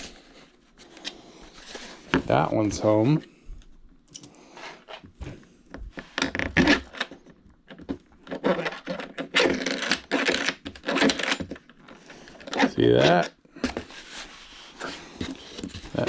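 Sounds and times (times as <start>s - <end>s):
hands scraping model parts: 8.3s - 16.0s.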